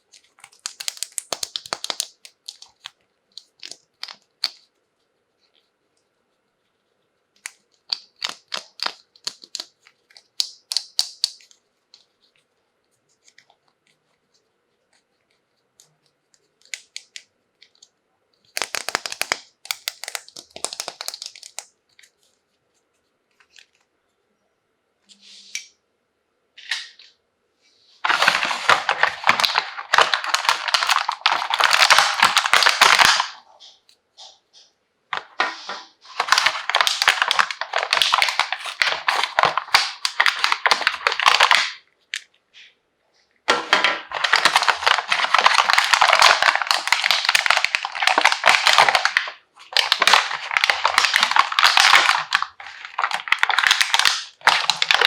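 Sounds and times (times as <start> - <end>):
plastic packaging crinkling: 0.0 - 4.7, 7.4 - 12.3, 16.4 - 23.8, 28.0 - 34.4, 35.1 - 42.3, 43.5 - 55.0.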